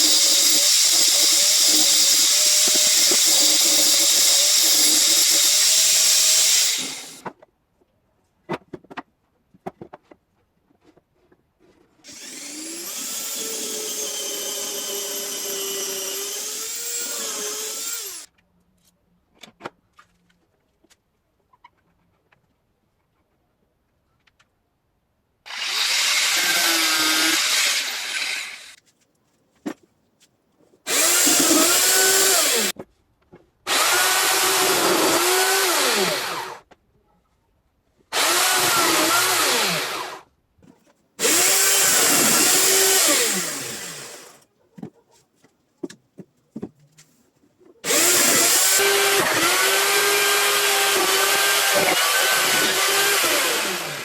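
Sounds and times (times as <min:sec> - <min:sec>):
electric chainsaw cutting wood: 0:00.0 - 0:07.2, 0:12.1 - 0:18.3, 0:25.5 - 0:28.8, 0:30.9 - 0:32.7, 0:33.7 - 0:36.6, 0:38.1 - 0:40.2, 0:41.2 - 0:44.4, 0:47.8 - 0:54.0.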